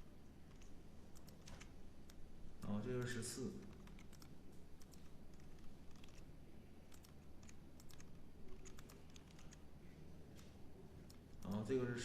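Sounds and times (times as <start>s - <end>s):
computer keyboard keystrokes: 0.5s - 6.2s, 6.9s - 9.6s.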